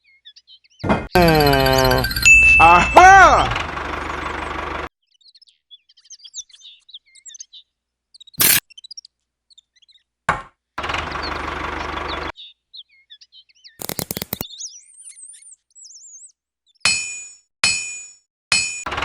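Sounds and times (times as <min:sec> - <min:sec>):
bird-like chirps: 0:05.0 - 0:10.1, 0:11.2 - 0:16.8
quick run of clicks: 0:08.4 - 0:08.6, 0:13.8 - 0:14.5.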